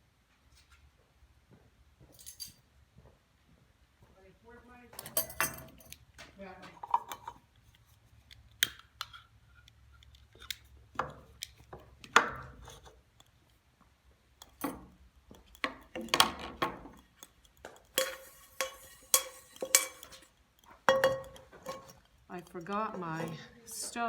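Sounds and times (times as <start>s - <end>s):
cookware and utensils clattering: 5.0s - 7.5s, 14.4s - 24.0s.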